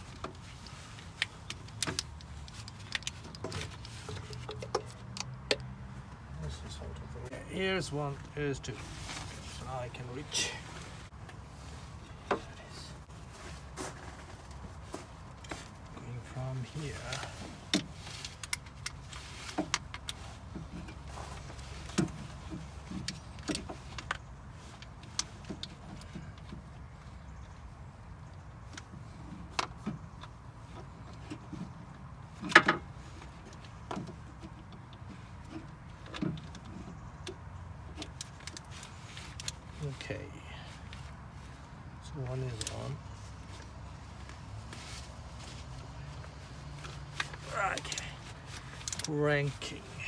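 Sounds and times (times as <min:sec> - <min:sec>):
tools clicking and knocking: 0:01.2 - 0:05.8.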